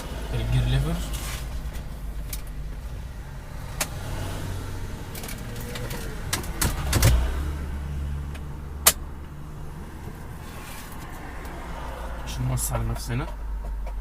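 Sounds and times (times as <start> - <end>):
gear shift lever clunk: 5.2 - 7.3.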